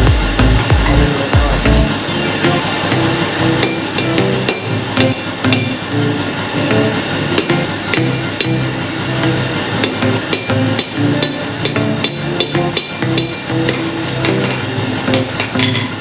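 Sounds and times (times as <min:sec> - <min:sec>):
background music: 0:00.0 - 0:16.0
hammer striking steel on anvil: 0:03.6 - 0:05.8, 0:09.8 - 0:16.0.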